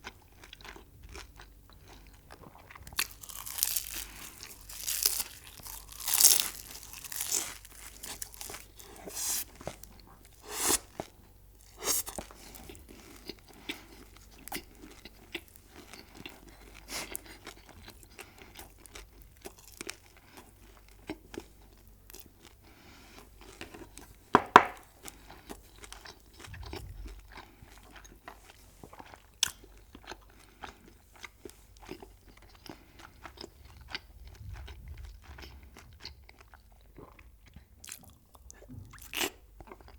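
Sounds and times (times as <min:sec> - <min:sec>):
crunchy food chewing: 0:00.0 - 0:39.9
sharp crunch: 0:24.4 - 0:24.9.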